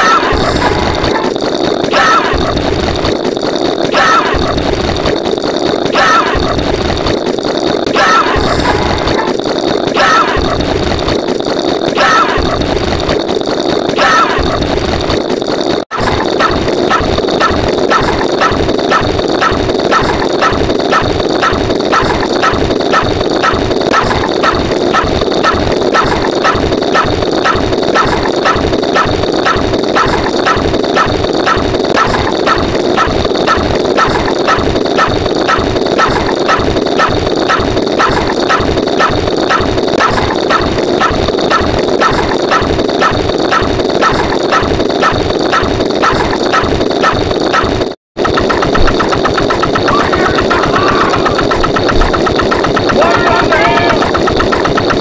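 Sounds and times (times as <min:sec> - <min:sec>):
steady noisy bed: 0:00.0 - 0:55.0.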